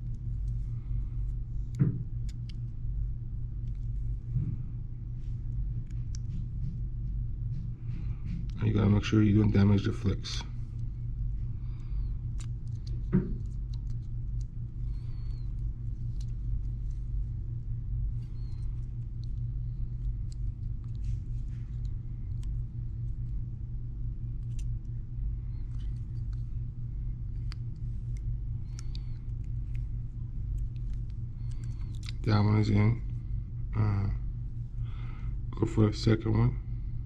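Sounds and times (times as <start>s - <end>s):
low electrical hum: 0.0s - 37.0s.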